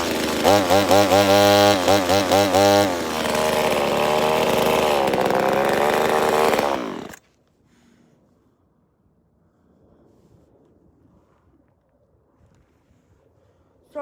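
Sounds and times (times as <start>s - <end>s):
chainsaw running: 0.0s - 7.2s.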